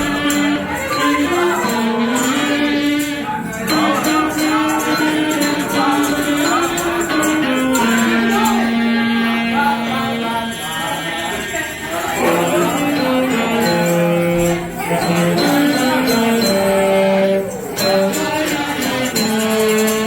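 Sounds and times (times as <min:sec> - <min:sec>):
melody of long held notes: 0:00.0 - 0:20.0
tambourine jingling: 0:00.0 - 0:20.0.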